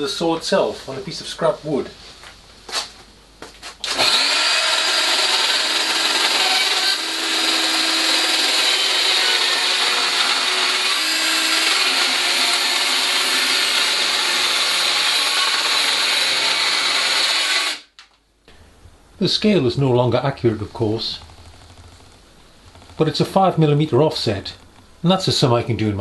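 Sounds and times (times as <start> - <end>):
circular saw cutting wood: 3.8 - 17.8.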